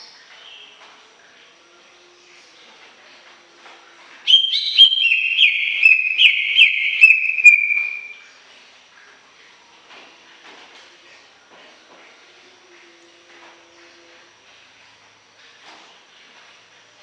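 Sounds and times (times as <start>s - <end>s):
bird whistling song: 4.3s - 8.2s.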